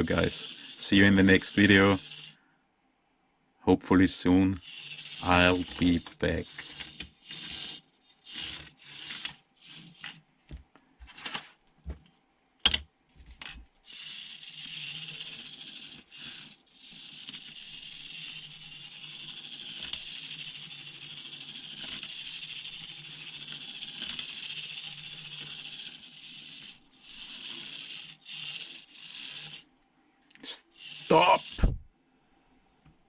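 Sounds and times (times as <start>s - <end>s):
toy car electric motor whirring: 0.0s - 2.4s, 4.6s - 10.2s, 13.8s - 29.7s, 30.4s - 31.8s.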